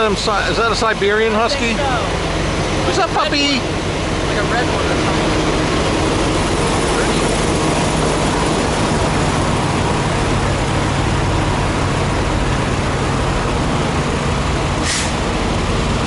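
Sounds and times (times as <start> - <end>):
diesel engines idling: 0.0 - 16.0
short sharp air hiss: 14.8 - 15.2.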